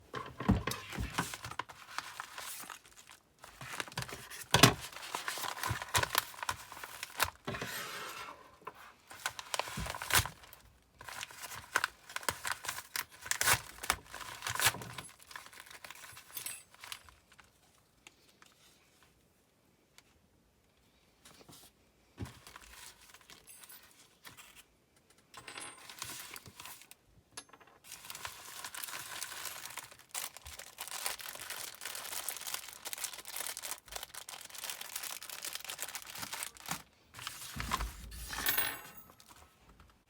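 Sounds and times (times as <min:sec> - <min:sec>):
packaging crinkling and tearing: 0:00.8 - 0:07.5, 0:09.1 - 0:18.4, 0:27.9 - 0:38.1.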